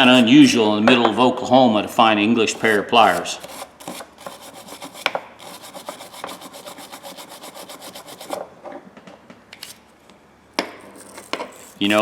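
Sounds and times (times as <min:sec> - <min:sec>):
wire brush scrubbing metal pliers: 0:00.0 - 0:00.5, 0:02.5 - 0:08.4, 0:10.8 - 0:12.0.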